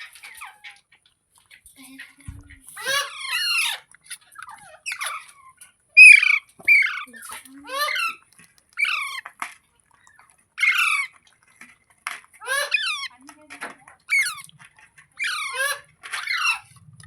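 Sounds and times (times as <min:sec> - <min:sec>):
parakeet harsh calls: 0:02.7 - 0:09.3, 0:10.2 - 0:11.2, 0:12.4 - 0:13.2, 0:14.0 - 0:16.8.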